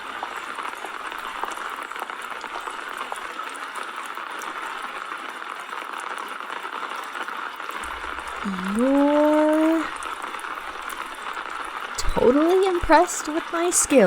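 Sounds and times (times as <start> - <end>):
steady rain hiss: 0.0 - 14.0.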